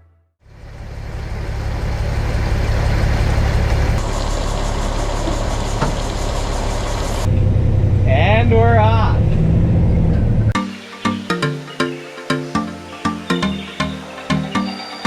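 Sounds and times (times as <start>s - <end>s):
large engine rumbling: 0.4s - 10.6s.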